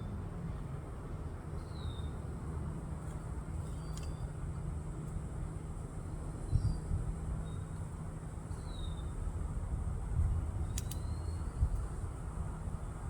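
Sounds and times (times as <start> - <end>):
faint clicks: 10.7 - 11.0.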